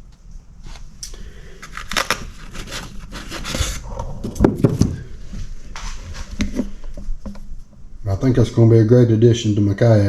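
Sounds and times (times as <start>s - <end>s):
fabric rubbing and scraping: 1.6s - 7.8s
dull knocks: 4.0s - 5.2s.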